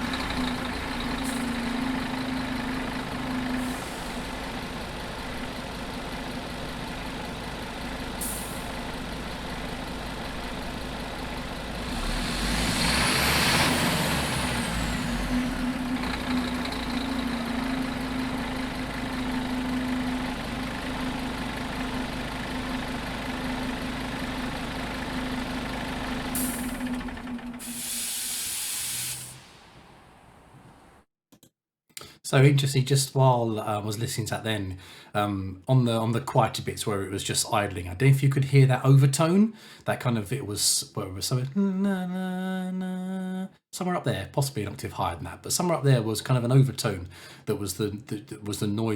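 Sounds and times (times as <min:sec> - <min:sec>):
diesel engine idling: 0:00.0 - 0:29.6
air hiss: 0:27.6 - 0:29.8.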